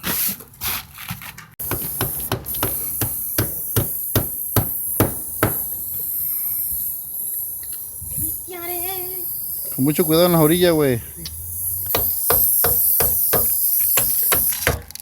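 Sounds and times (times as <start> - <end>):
hammer striking nails: 1.6 - 5.7, 11.9 - 15.0.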